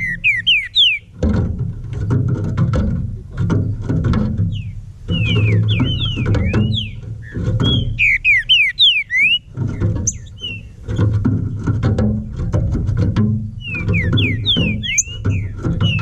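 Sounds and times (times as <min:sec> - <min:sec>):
bird singing whistled slurs: 0:00.0 - 0:01.1, 0:04.5 - 0:11.0, 0:13.6 - 0:16.0
background music with plucked bass: 0:00.0 - 0:16.0.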